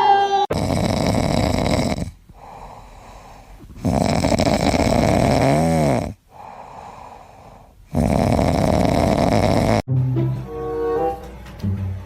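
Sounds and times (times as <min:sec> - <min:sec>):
pet snoring loudly: 0:00.5 - 0:09.9.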